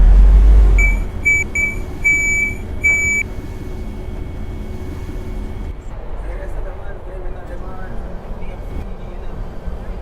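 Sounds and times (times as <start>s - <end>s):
bus engine hum: 0.0s - 10.0s
high electronic beeps: 0.7s - 3.3s.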